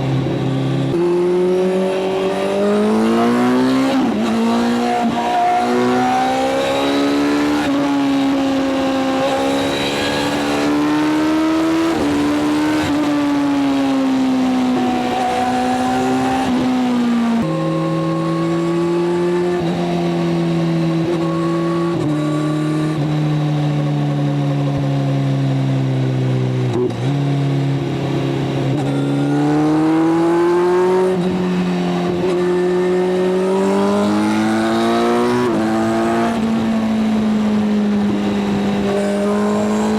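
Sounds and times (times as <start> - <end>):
motorcycle engine running at speed: 0.0 - 39.9.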